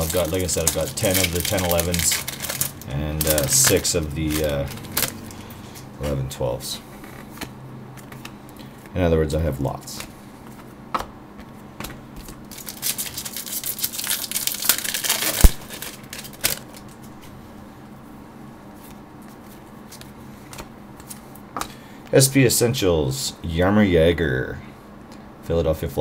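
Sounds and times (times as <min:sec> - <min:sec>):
wrapper snapping: 0:00.0 - 0:05.4, 0:12.3 - 0:17.0
foil wrapper tearing and crinkling: 0:00.0 - 0:05.5, 0:12.4 - 0:17.0.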